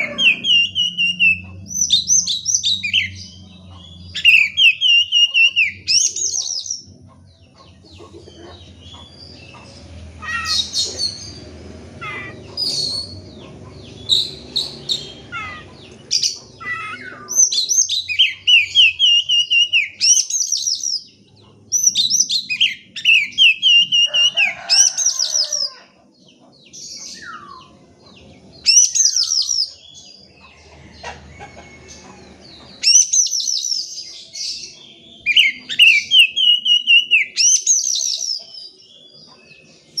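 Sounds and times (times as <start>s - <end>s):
bird singing varied song: 0.0s - 40.0s.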